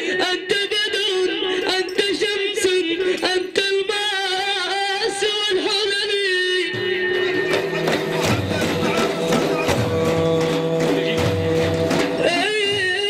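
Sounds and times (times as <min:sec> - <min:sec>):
man singing ornamented melody: 0:00.0 - 0:13.0
sharp percussive strikes: 0:06.8 - 0:13.0.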